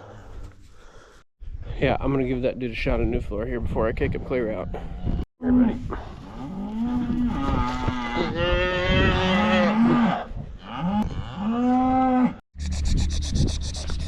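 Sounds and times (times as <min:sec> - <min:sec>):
cattle mooing: 0:06.4 - 0:12.4.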